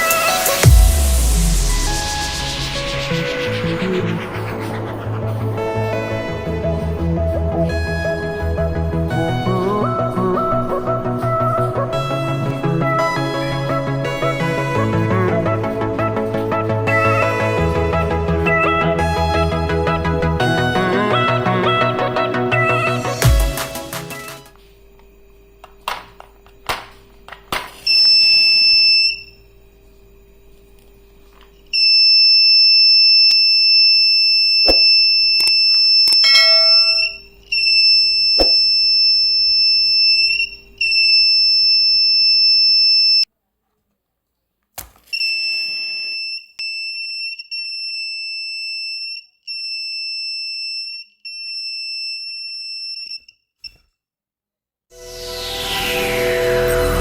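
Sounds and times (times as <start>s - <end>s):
high-pitched buzzer beep: 36.1s - 37.3s.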